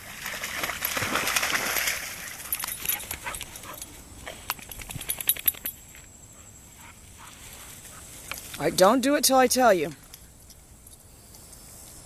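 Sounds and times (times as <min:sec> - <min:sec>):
dog splashing through water: 0:00.0 - 0:03.8.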